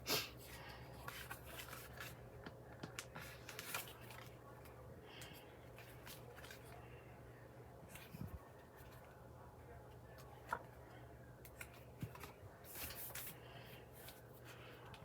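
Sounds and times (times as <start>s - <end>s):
low steady hum: 0.0s - 15.0s
paper rustling and clicking: 1.0s - 4.3s.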